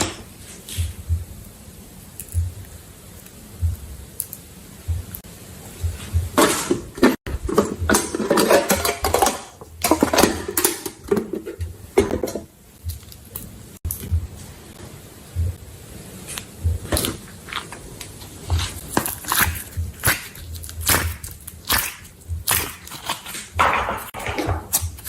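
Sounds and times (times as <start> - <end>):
slime squishing and crackling: 16.9 - 24.1.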